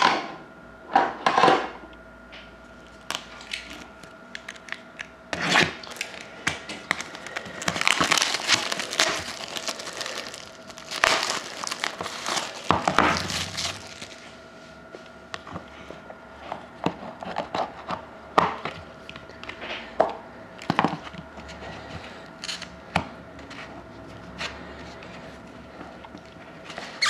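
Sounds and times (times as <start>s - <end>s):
packaging crinkling and tearing: 2.8s - 14.3s, 22.4s - 22.7s.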